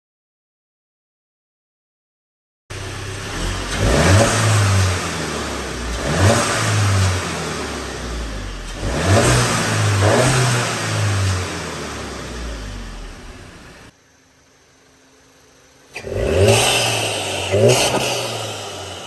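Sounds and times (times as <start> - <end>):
turbocharged engine revving: 2.7 - 13.9, 15.9 - 19.0.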